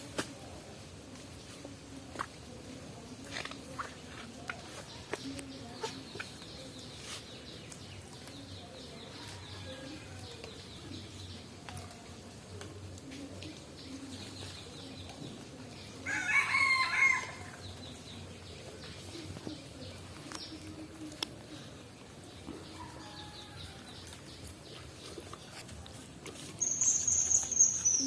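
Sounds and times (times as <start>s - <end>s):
rooster crowing: 16.1s - 17.4s.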